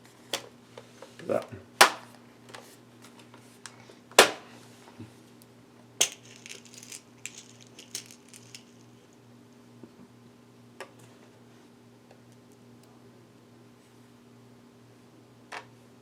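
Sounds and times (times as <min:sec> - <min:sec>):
small metal screws clicking: 0:06.0 - 0:08.9.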